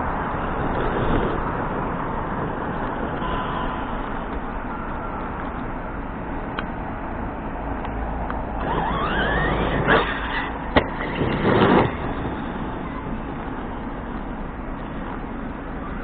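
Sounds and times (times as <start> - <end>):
electric motor whining: 8.6 - 13.2
toy truck driving hard: 8.6 - 13.6.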